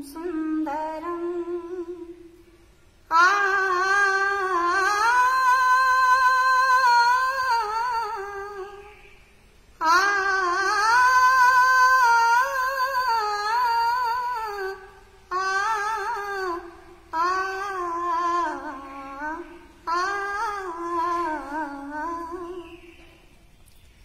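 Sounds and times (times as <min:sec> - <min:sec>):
woman humming a melody: 0:00.0 - 0:02.4, 0:03.1 - 0:08.9, 0:09.8 - 0:23.0.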